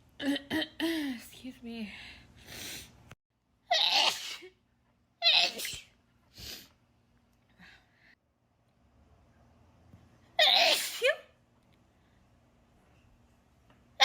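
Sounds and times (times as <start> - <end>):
breathing: 1.9 - 3.0, 7.5 - 8.2
person sneezing: 5.3 - 5.9, 10.4 - 11.3.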